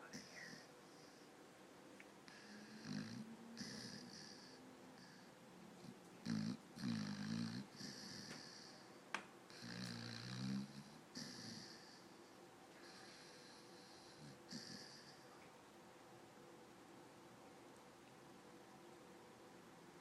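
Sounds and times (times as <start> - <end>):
dog snoring: 2.2 - 15.4.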